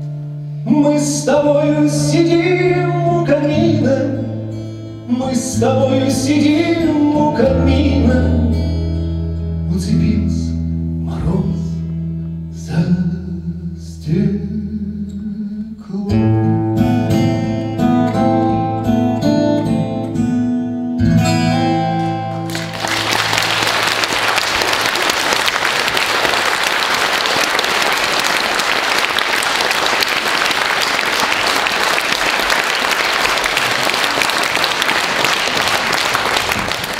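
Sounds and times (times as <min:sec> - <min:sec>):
acoustic guitar chords: 0:00.0 - 0:25.1
audience applause: 0:22.5 - 0:36.9.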